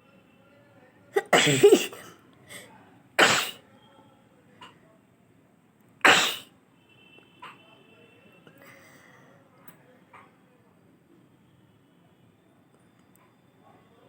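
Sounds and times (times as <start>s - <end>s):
person sneezing: 1.2s - 3.6s, 6.1s - 6.5s.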